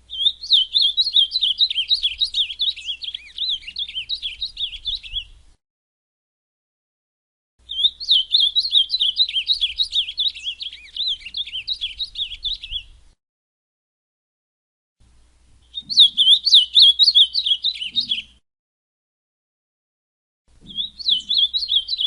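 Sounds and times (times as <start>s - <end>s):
bird singing whistled notes: 0.1s - 5.4s, 7.6s - 13.0s, 15.6s - 18.4s, 20.6s - 22.0s.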